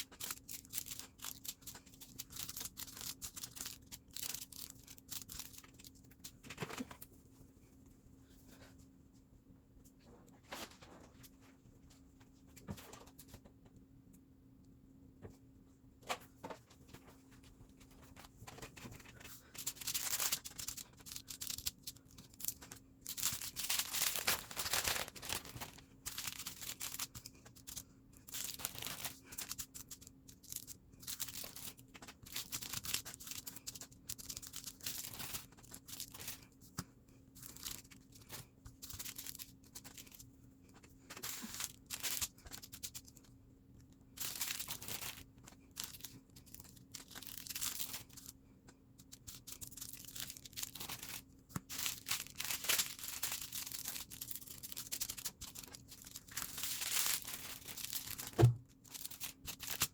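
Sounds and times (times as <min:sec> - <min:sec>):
plastic bags crinkling: 0:00.0 - 0:05.9, 0:19.5 - 0:36.4, 0:37.4 - 0:38.0, 0:38.8 - 0:40.2, 0:41.2 - 0:43.0, 0:44.2 - 0:48.3, 0:49.3 - 0:59.9.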